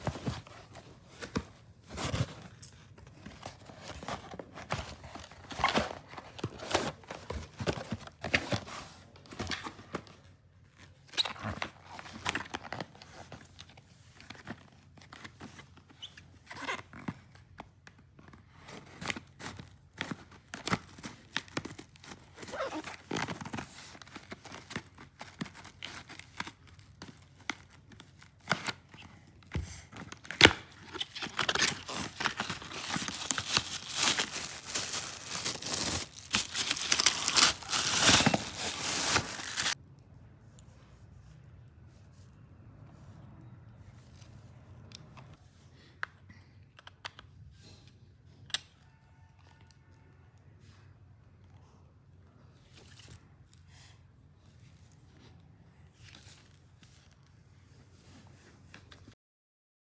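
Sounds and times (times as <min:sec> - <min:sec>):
packaging crinkling and tearing: 0:18.8 - 0:29.1, 0:30.0 - 0:39.8.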